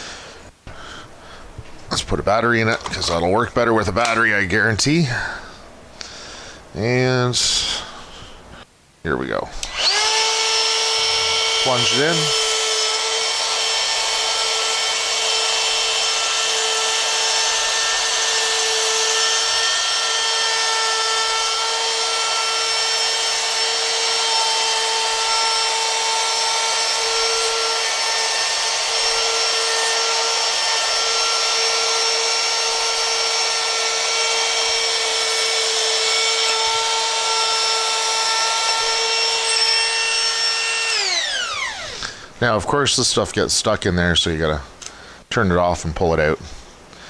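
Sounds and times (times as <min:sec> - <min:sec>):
router high-pitched whine: 0:09.6 - 0:42.1.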